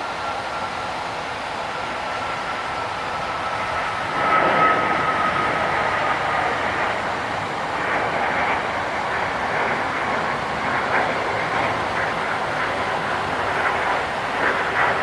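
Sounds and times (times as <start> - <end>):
jet airliner engines passing: 0.0 - 15.0.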